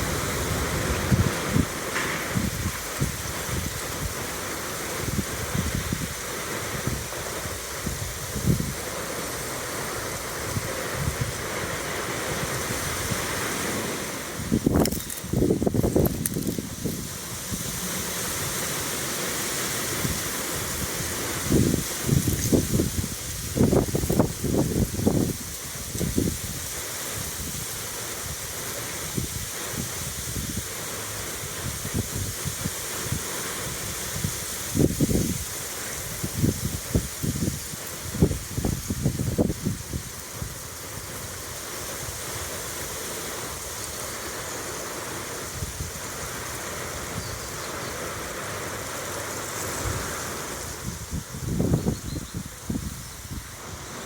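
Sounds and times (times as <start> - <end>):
wind blowing: 0.0 - 54.0
wind gusts buffeting microphone: 0.0 - 54.0.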